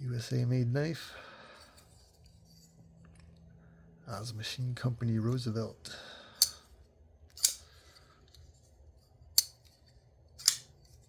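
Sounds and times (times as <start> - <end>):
folding knife blade clicking: 7.4 - 7.6, 9.4 - 9.6, 10.4 - 10.7.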